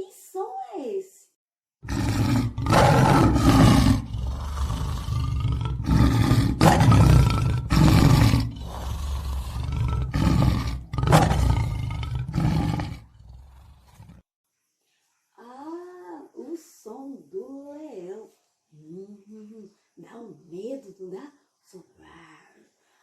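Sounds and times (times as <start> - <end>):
lion roaring and growling: 1.8 - 14.2.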